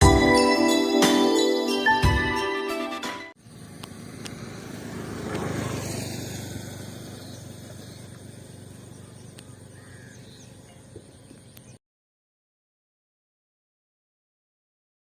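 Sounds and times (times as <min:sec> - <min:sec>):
engine passing by: 0:03.4 - 0:11.7.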